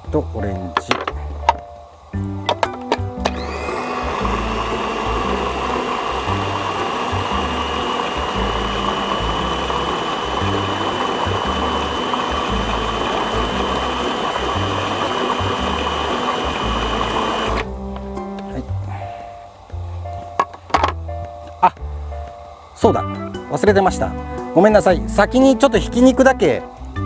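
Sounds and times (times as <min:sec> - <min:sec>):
food processor motor whining: 0:02.1 - 0:21.0.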